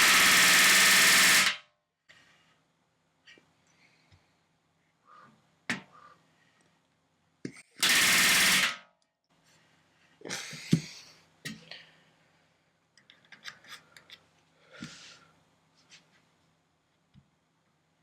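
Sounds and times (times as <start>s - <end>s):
pneumatic rivet gun hammering: 0.0s - 1.6s, 7.8s - 8.8s.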